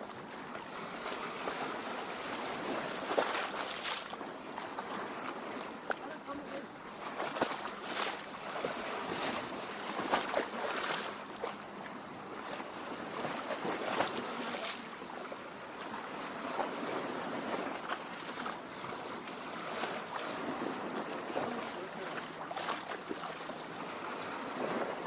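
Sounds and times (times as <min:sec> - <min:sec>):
water lapping at shore: 0:00.0 - 0:25.0
small water splashes: 0:02.3 - 0:25.0.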